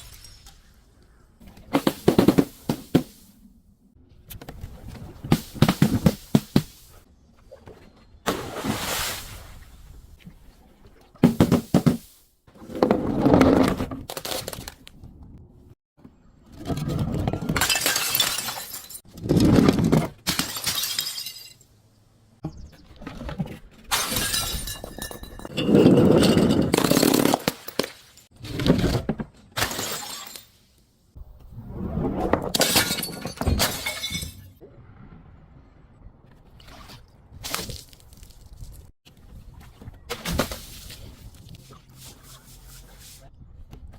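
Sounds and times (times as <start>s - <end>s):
glass breaking and crunching: 17.6s - 19.1s, 20.2s - 21.6s, 23.9s - 28.2s, 29.6s - 30.6s, 32.5s - 34.6s.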